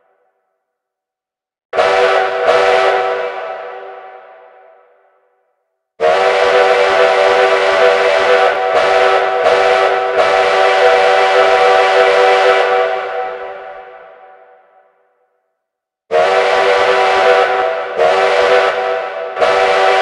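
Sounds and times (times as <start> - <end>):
steam locomotive whistle: 1.8 - 5.0, 6.0 - 14.8, 16.1 - 20.0.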